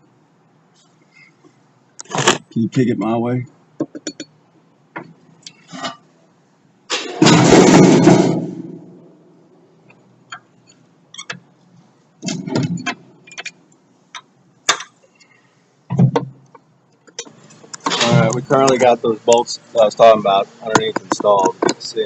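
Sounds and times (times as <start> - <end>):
metal clicks and knocks: 11.1 - 11.5, 12.2 - 15.0, 20.7 - 21.8.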